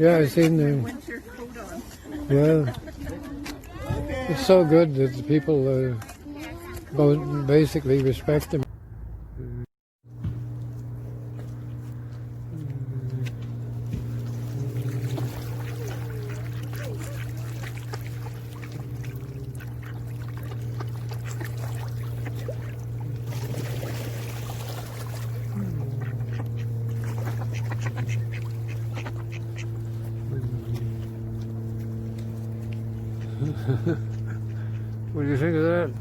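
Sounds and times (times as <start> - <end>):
steady low hum: 8.7 - 36.0
ducks quacking: 11.5 - 35.9.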